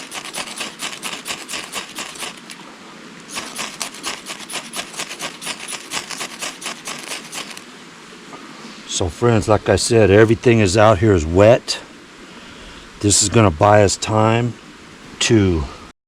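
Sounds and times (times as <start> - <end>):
blade shaving wood: 0.0 - 2.6, 3.3 - 7.7.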